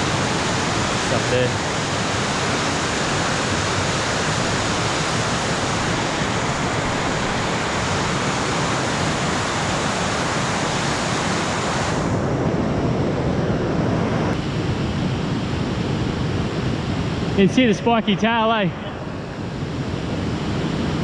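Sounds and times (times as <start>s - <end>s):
floodwater rushing: 0.1s - 11.8s.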